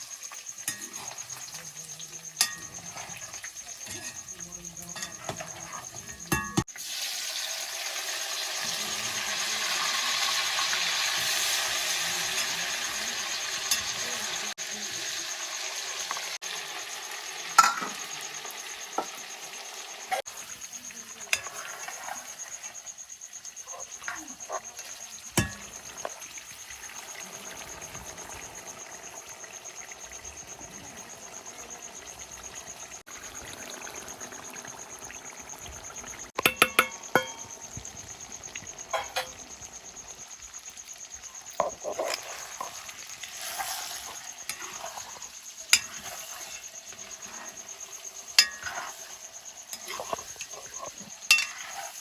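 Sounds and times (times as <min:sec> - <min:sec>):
pork frying in a pan: 0:00.0 - 0:52.0
metal utensil clinking on pan: 0:00.6 - 0:01.8, 0:02.4 - 0:06.7, 0:13.7 - 0:14.1, 0:17.6 - 0:18.0, 0:25.3 - 0:25.8, 0:36.4 - 0:37.5, 0:38.9 - 0:39.4, 0:45.7 - 0:46.6, 0:48.3 - 0:49.0, 0:49.7 - 0:51.8.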